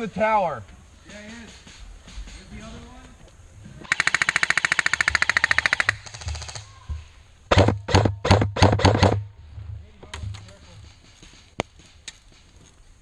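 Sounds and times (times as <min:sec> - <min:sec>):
airsoft gun full-auto burst: 0:03.9 - 0:06.7.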